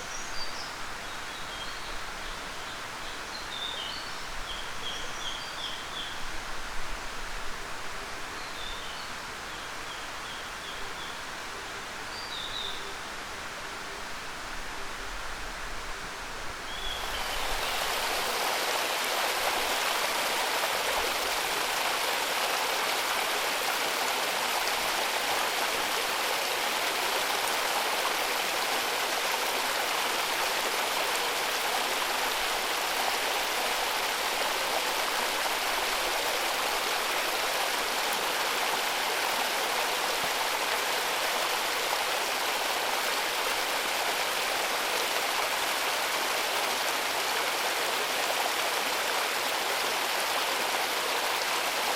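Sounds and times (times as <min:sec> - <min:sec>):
water rushing over rocks: 0:17.0 - 0:51.9.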